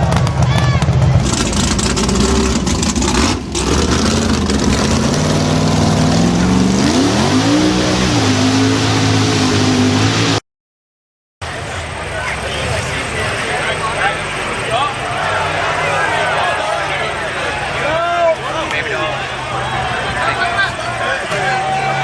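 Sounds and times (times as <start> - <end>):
engine revving under load: 1.1 - 10.4.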